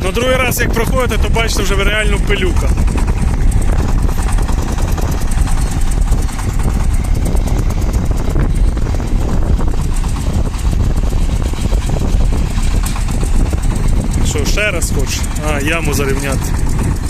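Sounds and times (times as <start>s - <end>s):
diesel tractor engine running: 0.0s - 17.0s.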